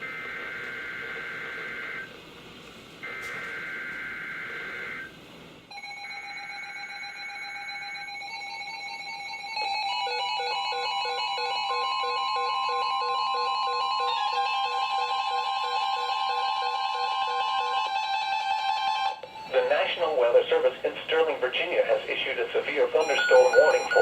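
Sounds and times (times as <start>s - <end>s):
overlapping beeping alarms: 0.0s - 2.1s, 3.0s - 5.1s, 5.7s - 18.5s, 22.8s - 24.0s
steady alert tones: 23.0s - 24.0s.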